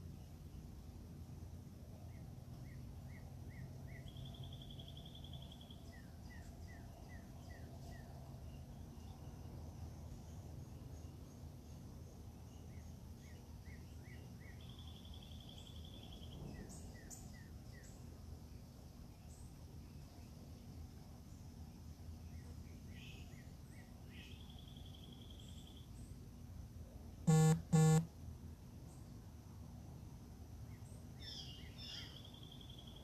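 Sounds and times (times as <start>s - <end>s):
songbird singing: 2.0s - 26.3s, 30.6s - 33.0s
steady low hum: 18.0s - 29.0s.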